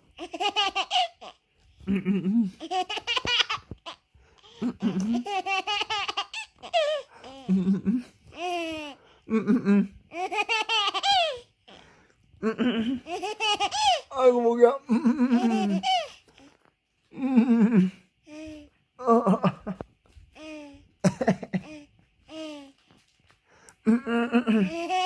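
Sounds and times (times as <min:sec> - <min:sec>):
infant laughing: 0:00.2 - 0:11.8, 0:12.4 - 0:14.2, 0:14.9 - 0:16.2, 0:23.9 - 0:25.0.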